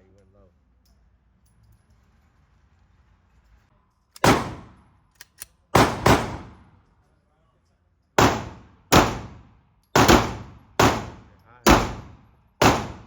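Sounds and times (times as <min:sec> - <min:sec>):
handgun shots: 0:04.2 - 0:06.8, 0:08.2 - 0:13.0.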